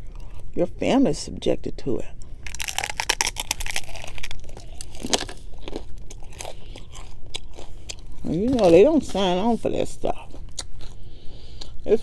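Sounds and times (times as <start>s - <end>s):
person chewing food: 0.0s - 0.6s, 2.2s - 9.3s, 10.1s - 12.0s.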